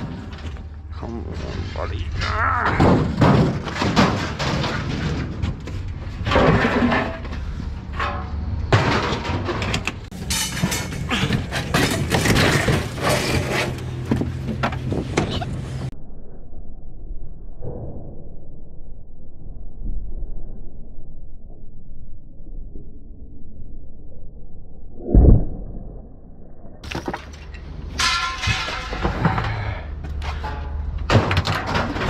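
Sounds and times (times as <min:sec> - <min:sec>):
metal scraping and banging: 0:00.0 - 0:15.9, 0:26.8 - 0:32.0.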